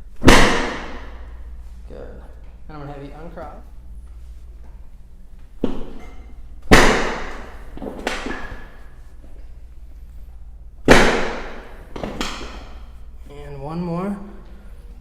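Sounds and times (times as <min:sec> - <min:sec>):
table section slamming down: 0:06.7 - 0:08.6.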